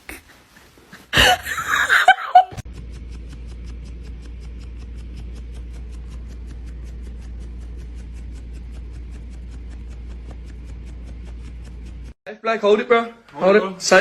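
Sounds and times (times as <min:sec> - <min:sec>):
burst of laughter: 0:01.2 - 0:02.6
low drone music: 0:02.7 - 0:12.2
quick ticking beat: 0:02.7 - 0:12.2.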